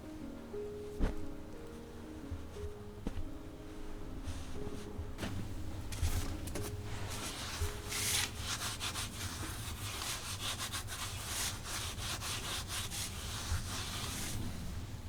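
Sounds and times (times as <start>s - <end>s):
rough rubbing strokes: 6.7s - 14.4s.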